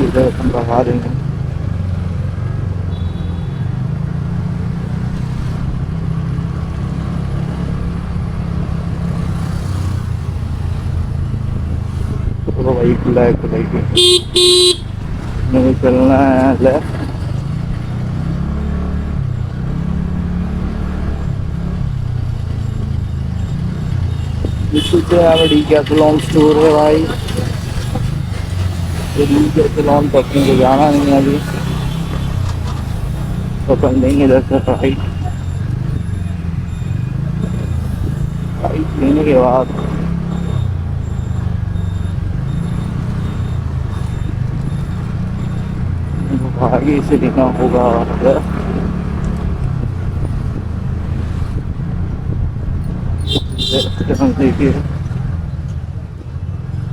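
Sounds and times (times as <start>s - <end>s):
road and wind noise: 0.0s - 56.9s
scooter engine running: 14.0s - 18.5s, 21.2s - 52.2s.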